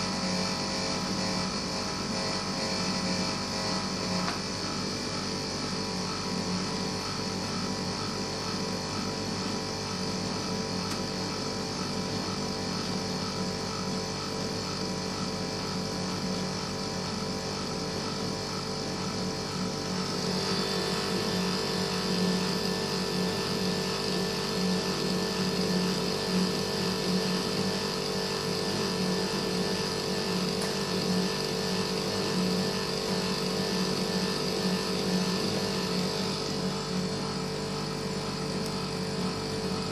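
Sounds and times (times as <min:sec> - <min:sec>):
air conditioner humming: 0:18.0 - 0:23.0.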